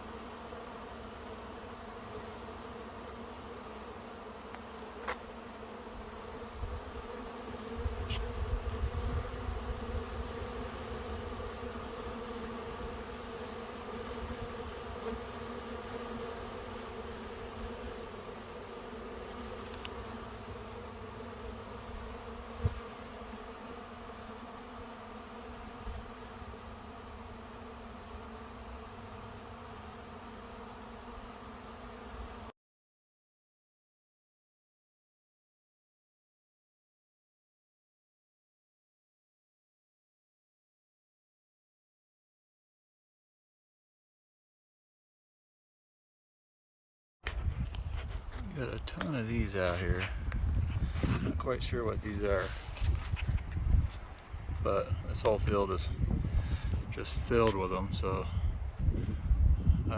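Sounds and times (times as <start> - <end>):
bees buzzing: 0.0 - 32.5, 47.5 - 59.9.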